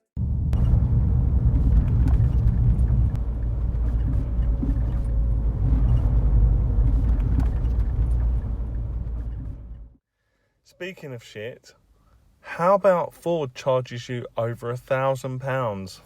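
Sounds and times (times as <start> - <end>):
car road and engine rumble: 0.0 - 10.0.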